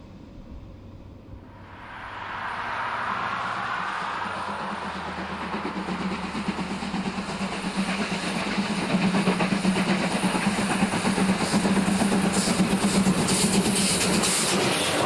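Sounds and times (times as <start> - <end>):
steady low hum: 0.0 - 14.3
fast rattle: 3.2 - 15.0.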